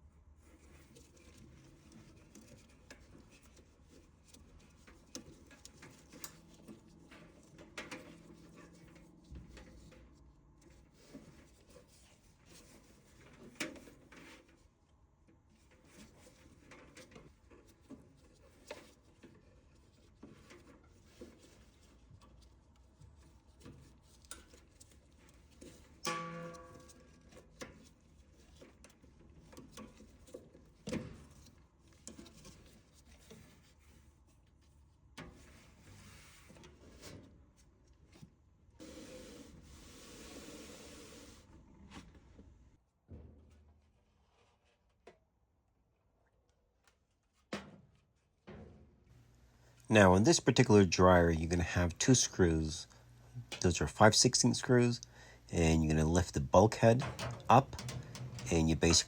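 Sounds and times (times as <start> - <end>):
dryer parts clicking and knocking: 23.2 - 33.6, 56.4 - 59.0.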